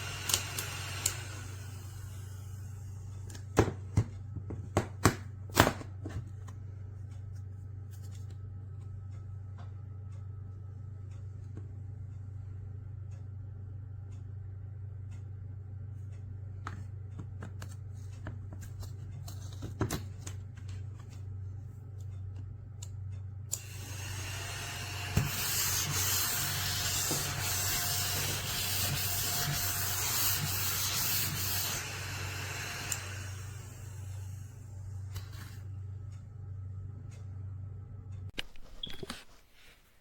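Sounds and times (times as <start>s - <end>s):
small vacuum cleaner whirring: 0.0s - 3.5s, 23.5s - 35.4s.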